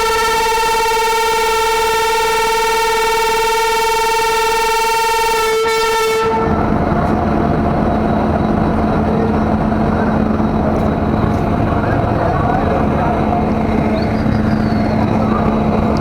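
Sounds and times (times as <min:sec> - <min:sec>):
locomotive horn blast: 0:00.0 - 0:06.9
low train rumble with hum: 0:00.0 - 0:16.0.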